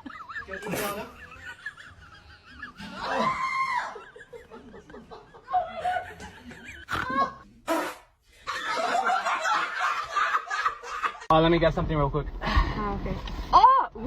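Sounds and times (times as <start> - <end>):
people laughing and snickering: 0.0 - 7.6, 8.3 - 11.3.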